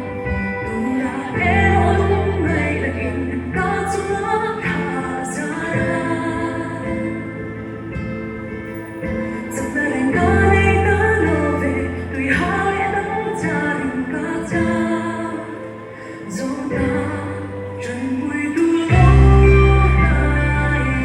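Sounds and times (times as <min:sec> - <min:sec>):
instrumental backing: 0:00.0 - 0:21.0
worship song singing: 0:00.0 - 0:21.0.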